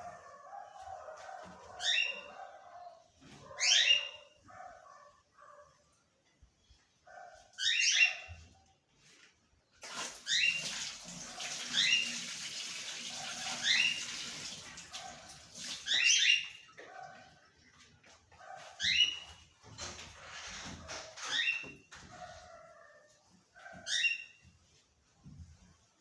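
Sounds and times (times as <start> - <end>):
pet bird chirping: 0.0 - 5.6, 6.7 - 8.5, 18.6 - 19.4, 23.6 - 24.4
running water hissing: 9.8 - 16.1.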